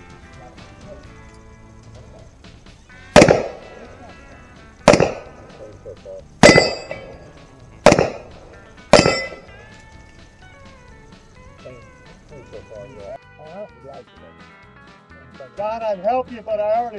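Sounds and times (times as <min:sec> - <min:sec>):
gunshots: 0:03.0 - 0:09.8
steel targets ringing clang: 0:03.1 - 0:10.2.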